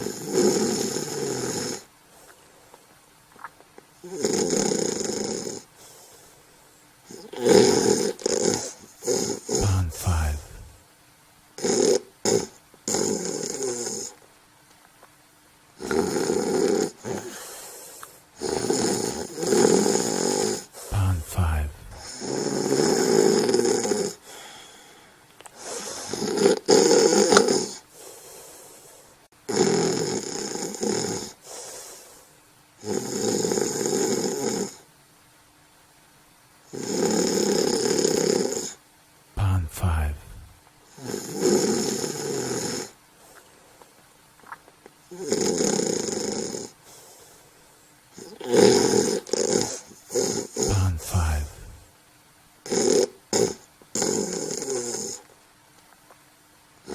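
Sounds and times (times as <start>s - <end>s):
person snoring: 4.0s - 5.7s, 7.1s - 10.8s, 18.4s - 25.0s, 39.4s - 42.9s, 48.2s - 51.9s
quiet breath: 5.7s - 7.0s, 17.2s - 18.3s, 24.2s - 26.2s, 27.8s - 29.2s, 31.4s - 32.4s, 46.8s - 48.0s, 50.6s - 51.9s.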